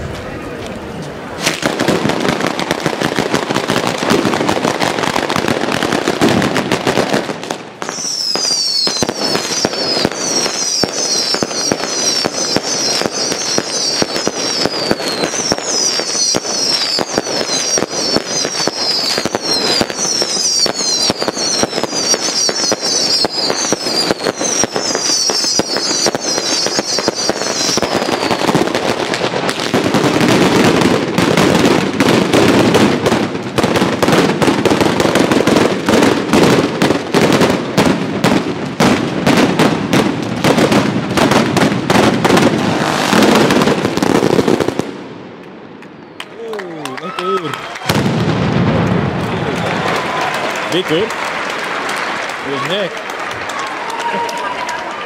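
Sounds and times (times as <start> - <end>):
firecrackers cracking rapidly: 1.4 - 55.0
falling whistles: 7.9 - 28.6.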